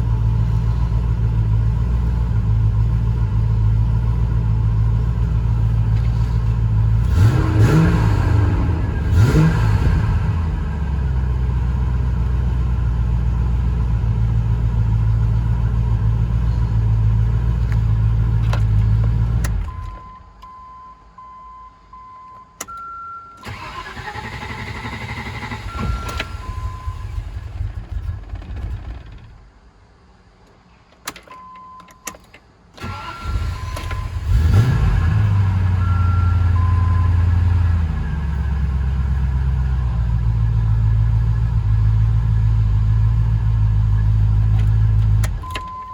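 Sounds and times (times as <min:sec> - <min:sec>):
car engine revving and idling: 0:00.0 - 0:20.0, 0:32.8 - 0:45.7
starter motor cranking: 0:23.4 - 0:25.9
warning chime beeps: 0:35.8 - 0:37.5.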